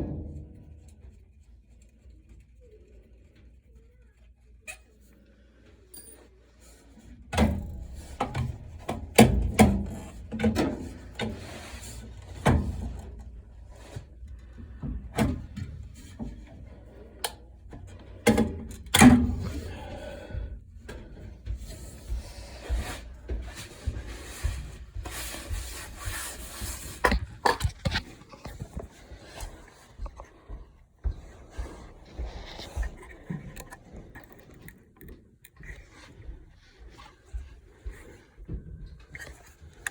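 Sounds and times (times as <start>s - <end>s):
rubbing and scraping: 21.6s - 30.3s.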